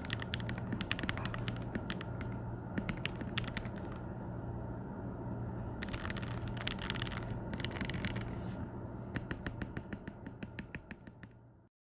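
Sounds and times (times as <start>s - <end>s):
keyboard typing: 0.0s - 4.1s, 5.8s - 8.4s, 9.1s - 11.4s
low steady hum: 0.0s - 11.7s.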